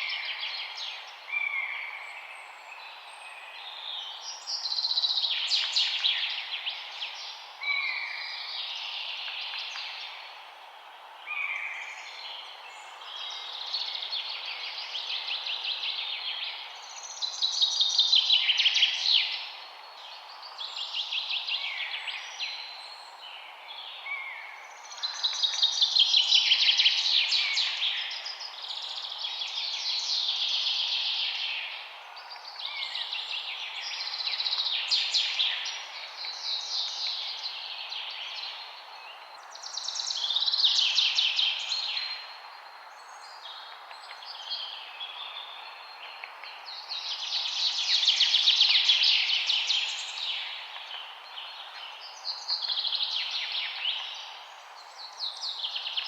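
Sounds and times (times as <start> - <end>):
songbirds singing trills: 11.3 - 56.0.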